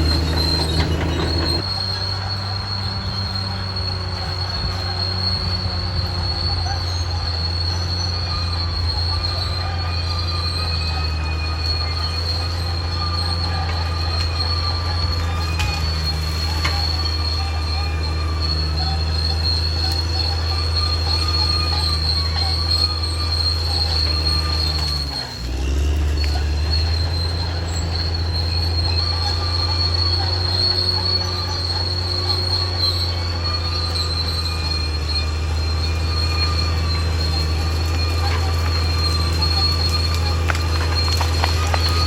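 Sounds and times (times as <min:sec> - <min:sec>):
diesel engine drone: 0:00.0 - 0:42.0
metallic squeal of steel tracks: 0:00.0 - 0:42.0.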